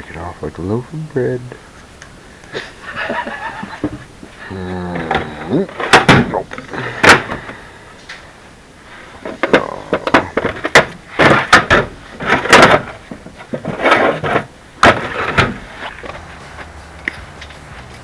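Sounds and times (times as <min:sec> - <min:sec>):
metal tools knocking and clanking: 0:09.3 - 0:16.3.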